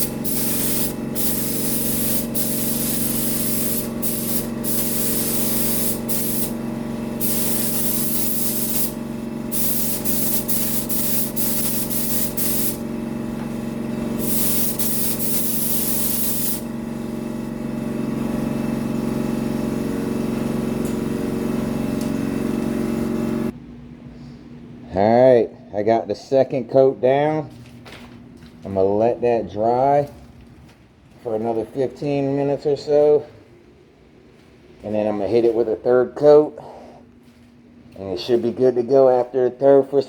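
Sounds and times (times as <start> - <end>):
paint spray gun hissing: 0.0 - 23.5
machine hum: 0.0 - 25.6.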